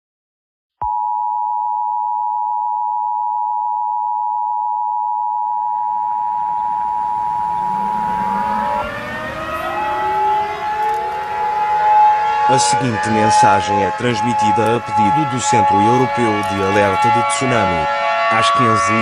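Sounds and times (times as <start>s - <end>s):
two-tone alert signal: 2.3s - 11.6s
civil defense siren: 5.5s - 19.0s.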